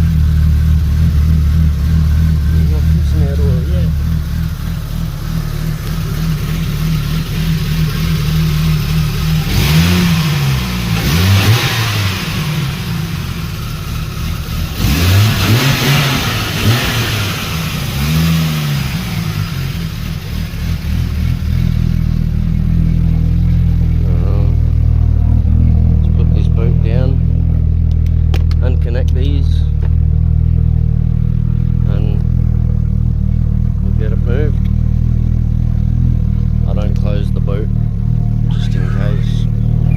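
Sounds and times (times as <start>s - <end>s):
car engine idling: 0.0s - 39.9s
engine throttle blips: 0.0s - 39.9s.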